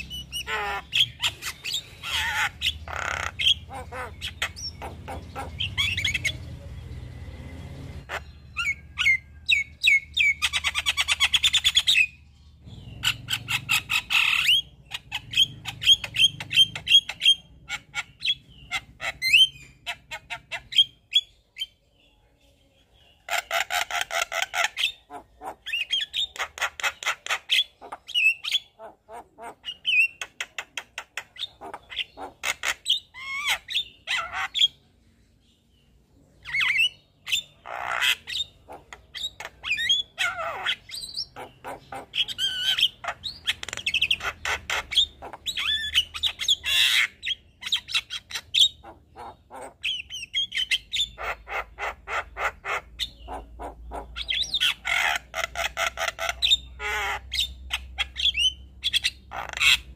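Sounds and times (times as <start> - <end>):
myna bird singing: 0.0 - 59.9.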